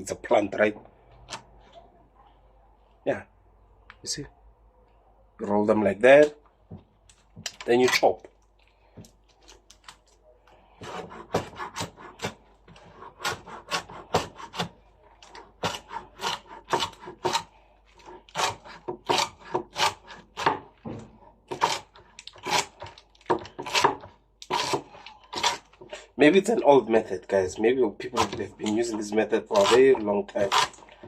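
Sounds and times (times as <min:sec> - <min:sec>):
knife chopping on board: 0:10.8 - 0:14.8, 0:15.6 - 0:25.9, 0:28.1 - 0:30.8.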